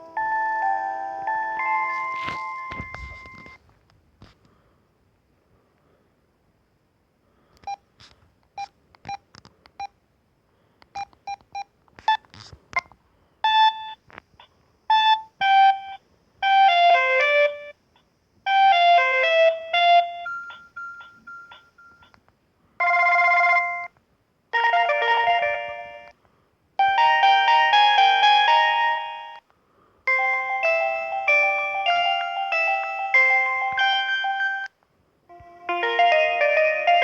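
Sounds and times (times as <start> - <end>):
phone ringtone melodies: 0.0 - 3.6, 18.5 - 22.1, 24.6 - 26.1, 26.8 - 29.4, 30.1 - 34.7, 35.4 - 37.0.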